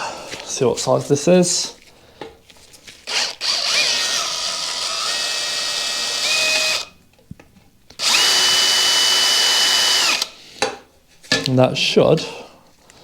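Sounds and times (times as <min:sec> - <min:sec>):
drill motor whining: 0:03.0 - 0:06.9, 0:08.0 - 0:10.4.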